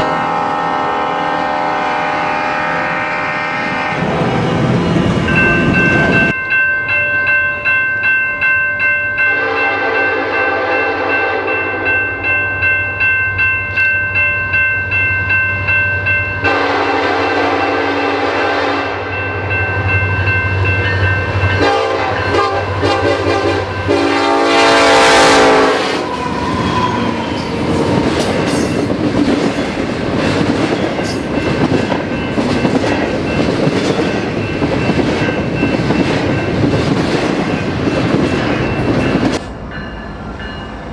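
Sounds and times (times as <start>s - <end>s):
locomotive air horn blasts: 0.0s - 4.3s, 9.3s - 12.0s, 16.5s - 19.1s, 21.6s - 26.6s
train cars rumbling and clacking: 3.8s - 40.9s.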